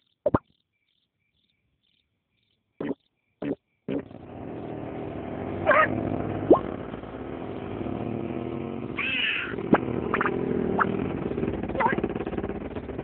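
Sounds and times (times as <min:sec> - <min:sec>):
short cartoon blips: 0:02.8 - 0:04.0, 0:09.0 - 0:10.9
engine-like buzzing drone: 0:02.8 - 0:13.0.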